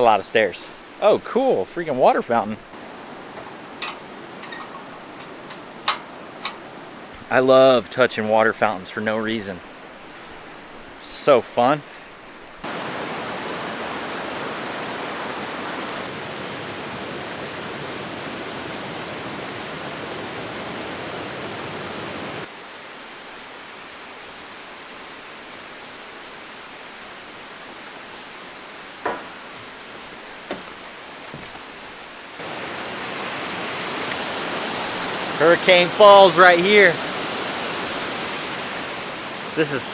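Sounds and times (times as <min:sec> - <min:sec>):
waterfall rushing: 0:00.0 - 0:39.9
brief knocks: 0:29.1 - 0:29.7.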